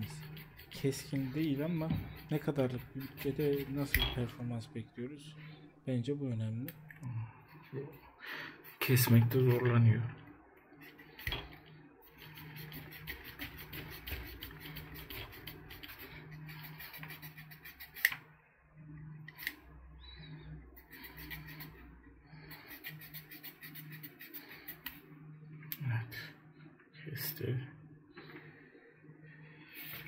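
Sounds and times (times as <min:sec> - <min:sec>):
knife sawing through cord: 0:00.0 - 0:04.2, 0:12.1 - 0:18.1, 0:20.8 - 0:21.8, 0:22.5 - 0:24.9.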